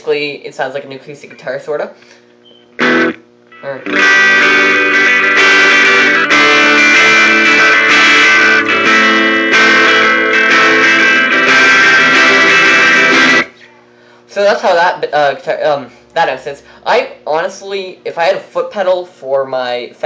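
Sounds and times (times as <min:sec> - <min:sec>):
electric guitar strumming chords: 0:02.8 - 0:13.6.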